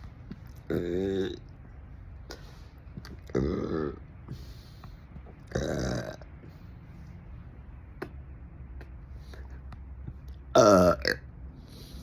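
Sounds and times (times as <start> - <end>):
person burping: 0.6 - 1.5, 3.1 - 4.0, 5.5 - 6.3, 10.5 - 11.3.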